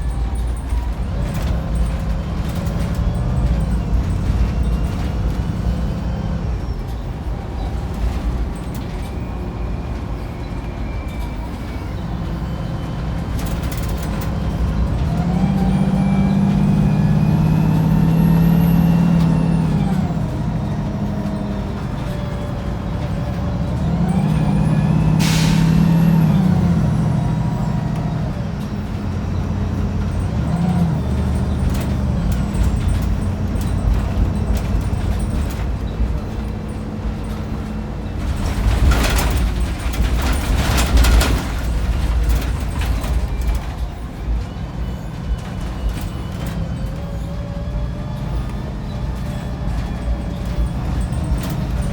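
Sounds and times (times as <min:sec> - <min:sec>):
bus diesel engine with whine: 0:00.0 - 0:51.9
air brake hiss: 0:25.2 - 0:26.1.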